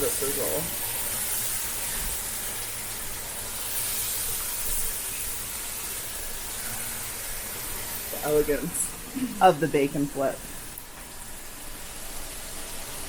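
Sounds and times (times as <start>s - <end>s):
bacon sizzling on a griddle: 0.0s - 13.0s.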